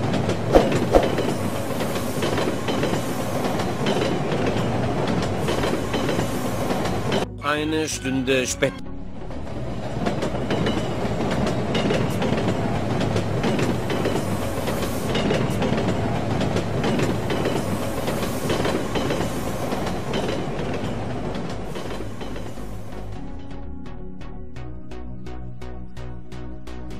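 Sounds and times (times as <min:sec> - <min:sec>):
train wheels rumbling on rails: 0:00.0 - 0:07.3, 0:09.1 - 0:23.3
wheels clattering on track: 0:00.0 - 0:07.3, 0:09.3 - 0:22.8.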